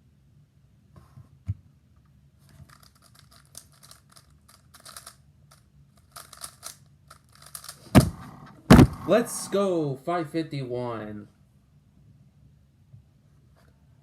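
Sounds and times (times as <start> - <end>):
puzzle cube plastic clicks: 2.4 - 8.4
soft thump: 7.9 - 9.1.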